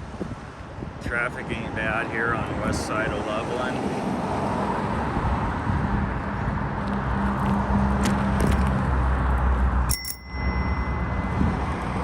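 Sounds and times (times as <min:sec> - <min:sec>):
wind rumbling on microphone: 0:00.0 - 0:09.8, 0:10.6 - 0:12.0
low hum: 0:09.9 - 0:12.0.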